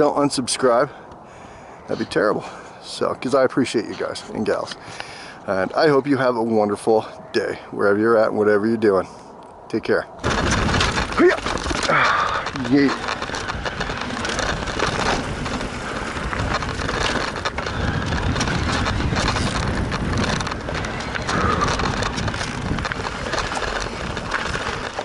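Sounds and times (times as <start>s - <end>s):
bike tyres crunching over dirt: 9.9s - 25.0s
bike knocks and rattles: 10.2s - 25.0s.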